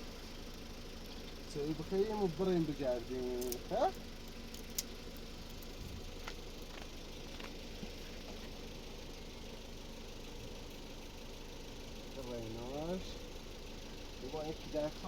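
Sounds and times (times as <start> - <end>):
engine humming: 0.0 - 15.0.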